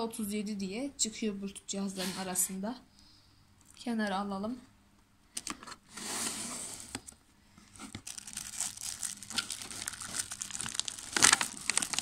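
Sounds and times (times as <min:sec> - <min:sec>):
packaging rustling and crinkling: 0:07.7 - 0:12.0
packaging crackles and clicks: 0:07.9 - 0:12.0.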